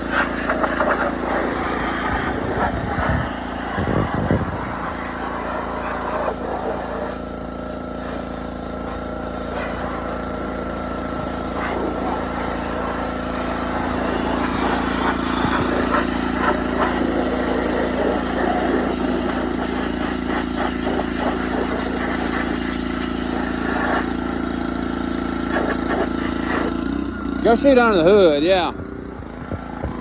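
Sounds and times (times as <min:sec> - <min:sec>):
spray hissing: 0:00.0 - 0:07.2, 0:08.0 - 0:24.4
pressure washer engine running: 0:00.0 - 0:30.0.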